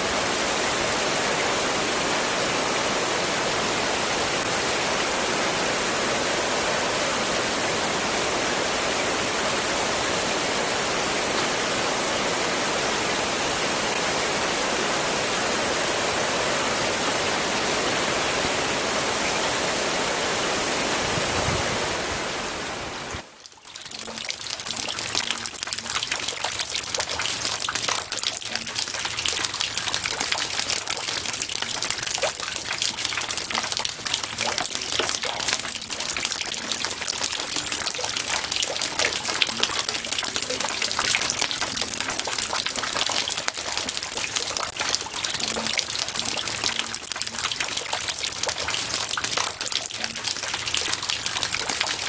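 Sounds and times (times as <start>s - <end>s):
heavy rain hiss: 0.0s - 23.3s.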